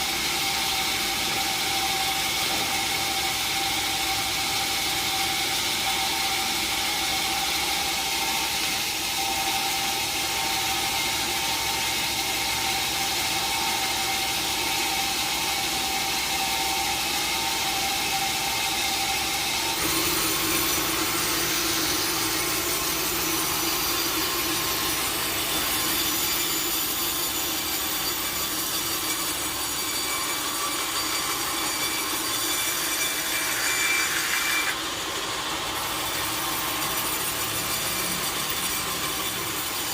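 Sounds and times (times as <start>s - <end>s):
saw cutting through log: 0.0s - 39.9s.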